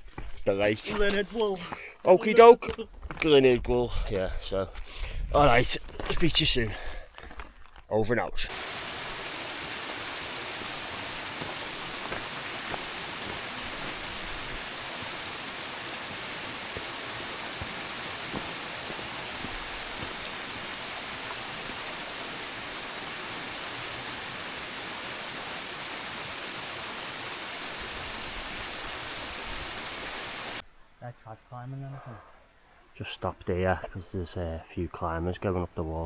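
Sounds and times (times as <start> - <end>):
stream water rushing: 8.5 - 30.6.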